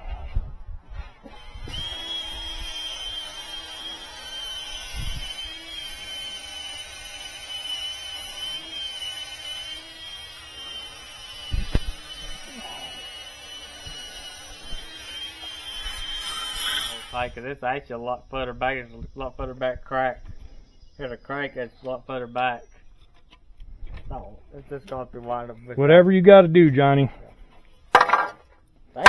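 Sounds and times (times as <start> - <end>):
power tool grinding metal: 1.2 - 17.5.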